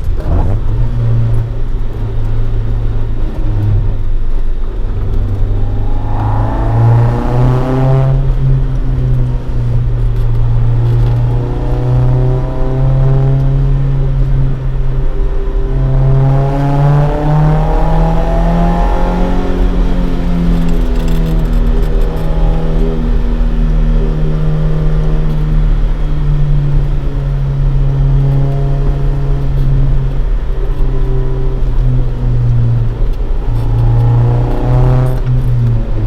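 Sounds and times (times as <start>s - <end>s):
car engine accelerating: 0.0s - 36.0s.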